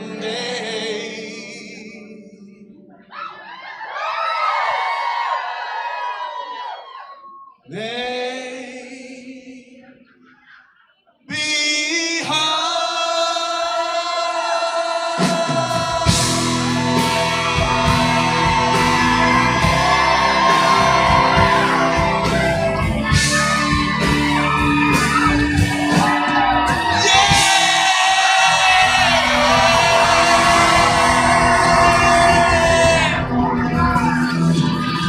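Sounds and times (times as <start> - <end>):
person singing: 0.0 - 3.0, 11.3 - 26.2, 26.8 - 35.0
live rock band playing: 15.2 - 35.0.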